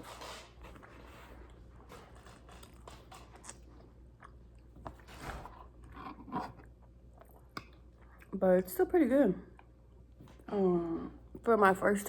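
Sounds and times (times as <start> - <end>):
person chewing food: 0.0 - 8.4.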